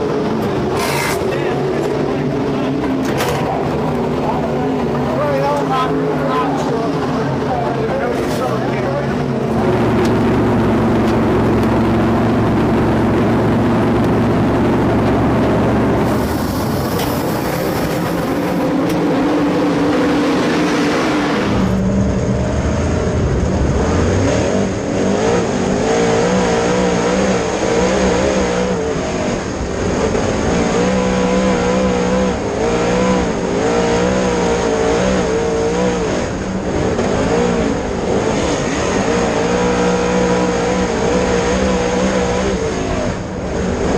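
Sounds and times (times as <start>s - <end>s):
race car engine revving: 0.0s - 43.9s.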